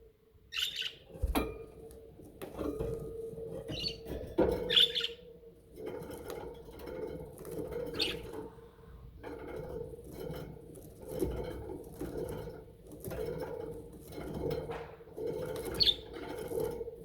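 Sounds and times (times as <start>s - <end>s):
budgerigars chattering and warbling: 0.6s - 1.0s, 4.7s - 5.2s.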